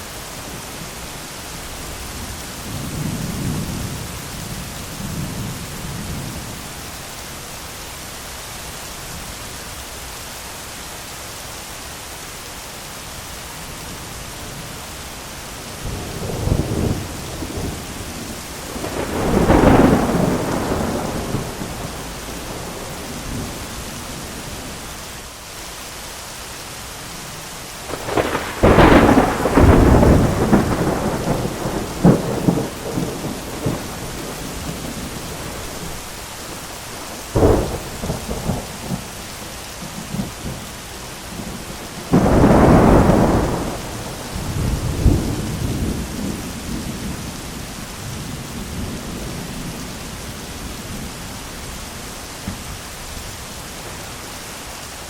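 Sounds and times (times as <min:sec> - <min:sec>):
heavy rain: 0:00.0 - 0:55.0
thunder rumbling and cracking: 0:15.8 - 0:24.8, 0:27.9 - 0:36.2, 0:36.9 - 0:39.2, 0:41.3 - 0:51.4.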